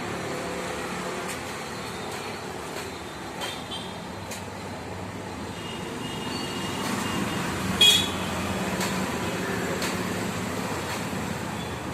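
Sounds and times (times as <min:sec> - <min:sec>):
road traffic noise: 0:00.0 - 0:11.9
vehicle horn toot: 0:07.8 - 0:08.3.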